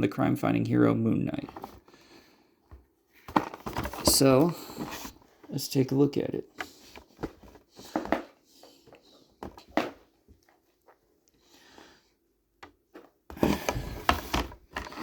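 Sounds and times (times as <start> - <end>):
packaging rustling: 3.1 - 5.6, 13.3 - 15.0.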